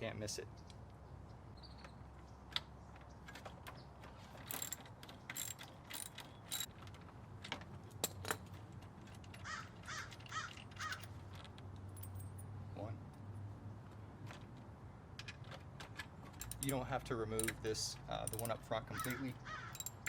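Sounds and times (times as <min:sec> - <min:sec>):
sharp metal clicks: 0:01.8 - 0:12.4, 0:15.1 - 0:20.0
socket ratchet clicking: 0:04.5 - 0:06.7, 0:16.4 - 0:20.0
crow cawing: 0:09.4 - 0:11.0, 0:18.9 - 0:19.8.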